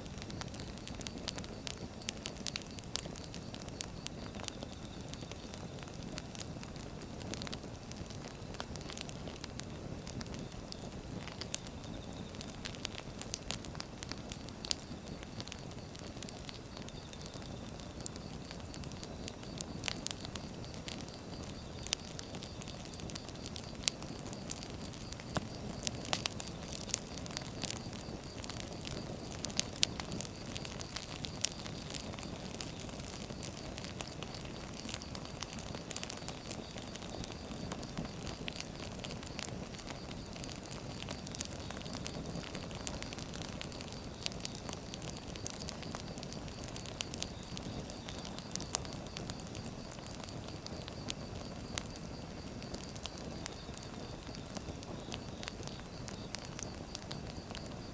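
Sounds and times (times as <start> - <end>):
fire crackles and pops: 0.0 - 57.9
firewood burning: 0.0 - 57.9.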